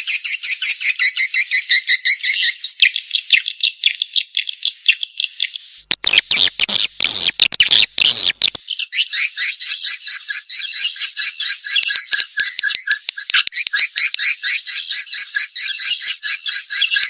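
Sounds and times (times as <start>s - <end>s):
dense crackling clicks: 5.9s - 8.6s.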